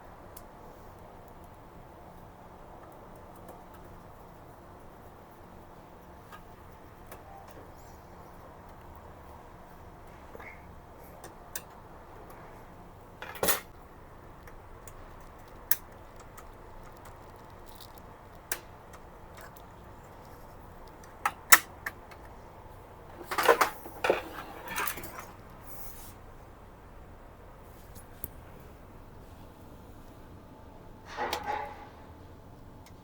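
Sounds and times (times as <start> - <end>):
plastic parts clattering: 23.1 - 25.4.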